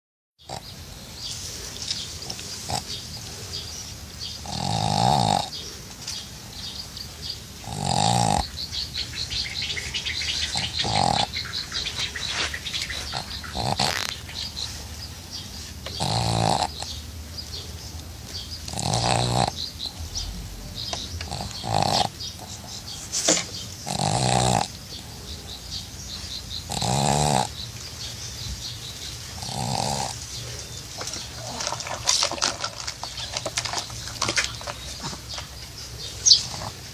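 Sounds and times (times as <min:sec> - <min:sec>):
dog snoring: 0:02.6 - 0:03.0, 0:04.3 - 0:05.7, 0:07.6 - 0:08.6, 0:10.4 - 0:12.1, 0:12.9 - 0:14.6, 0:15.8 - 0:17.0, 0:18.6 - 0:23.0, 0:23.8 - 0:25.0, 0:26.6 - 0:27.6, 0:29.4 - 0:30.6.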